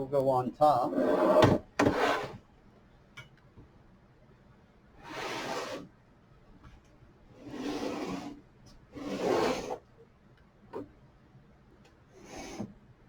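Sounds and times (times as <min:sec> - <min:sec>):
hardware rubbing and scraping: 0:00.8 - 0:02.4, 0:09.0 - 0:09.8.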